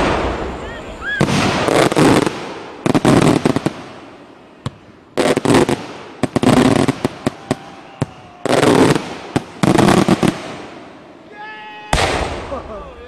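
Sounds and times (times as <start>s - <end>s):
firework bangs: 0.0s - 11.0s, 11.9s - 13.0s
fireworks cracking: 0.0s - 13.0s.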